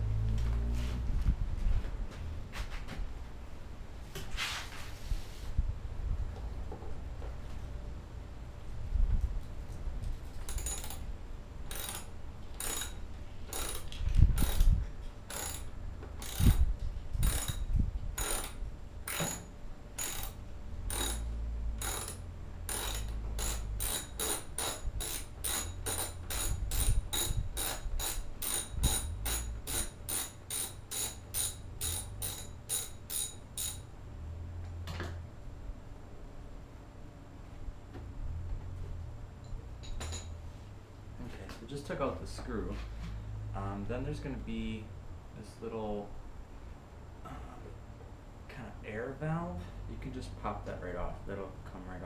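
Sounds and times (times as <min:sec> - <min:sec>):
ratcheting tool clicking: 0:10.3 - 0:11.0, 0:11.7 - 0:17.6, 0:18.2 - 0:33.8.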